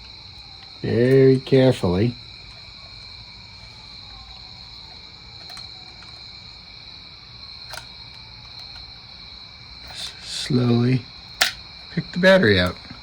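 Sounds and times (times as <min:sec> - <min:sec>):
metal pick clicking on plastic: 0:07.7 - 0:07.9, 0:11.4 - 0:11.6.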